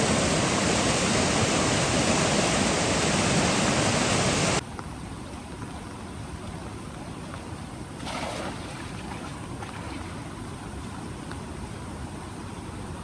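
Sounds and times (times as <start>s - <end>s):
river water rushing: 0.0s - 4.6s.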